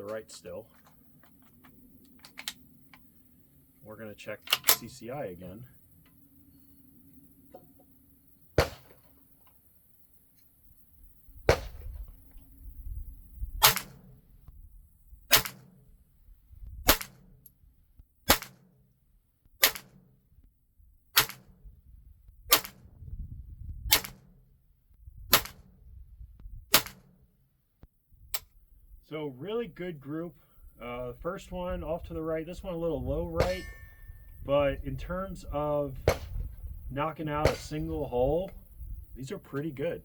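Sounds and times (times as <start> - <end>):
sharp gunshot cracks: 8.6 - 9.1, 11.5 - 12.0, 13.6 - 14.2, 15.3 - 15.8, 16.8 - 17.4, 18.3 - 18.7, 19.6 - 20.1, 21.2 - 21.6, 22.5 - 22.9, 23.9 - 24.3, 25.3 - 25.7, 26.7 - 27.2, 33.4 - 34.0, 35.9 - 36.5, 37.4 - 38.1.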